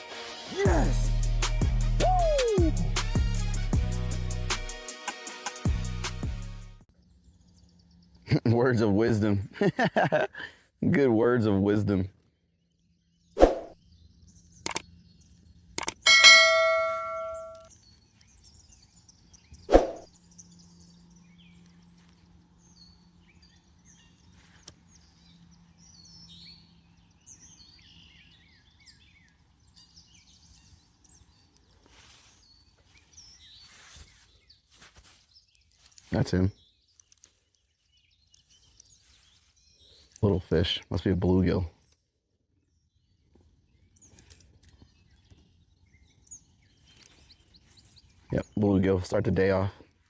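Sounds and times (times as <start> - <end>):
ringing metallic clang: 16.1 - 17.7
faint bird chirps: 16.1 - 40.6.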